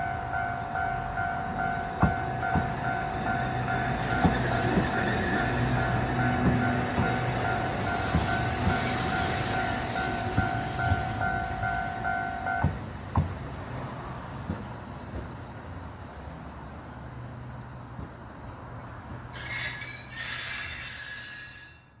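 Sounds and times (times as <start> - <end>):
crossing warning bell ringing: 0.0 - 12.8, 19.3 - 22.0
train wheels knocking over rail joints: 1.9 - 13.6
high-pitched wheel squeal on rails: 3.4 - 12.7, 19.2 - 22.0.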